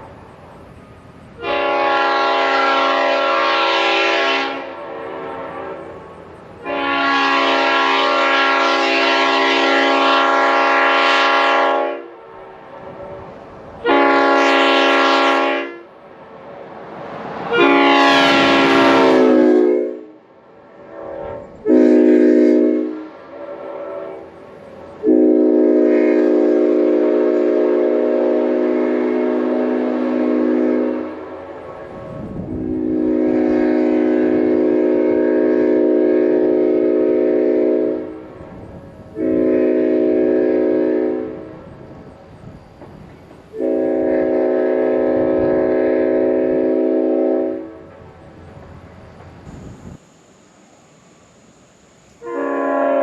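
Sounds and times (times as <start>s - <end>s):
air horn chord blasts: 1.4s - 5.9s, 6.6s - 12.2s, 13.8s - 15.9s, 17.5s - 20.1s, 21.0s - 24.3s, 25.0s - 38.2s, 39.2s - 41.4s, 43.6s - 47.8s, 52.2s - 53.0s.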